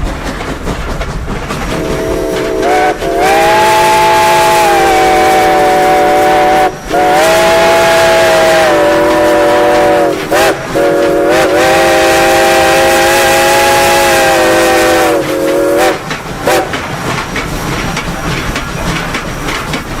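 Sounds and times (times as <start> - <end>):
train rumbling and clattering: 0.0 - 20.0
train whistle blasts: 1.8 - 16.7.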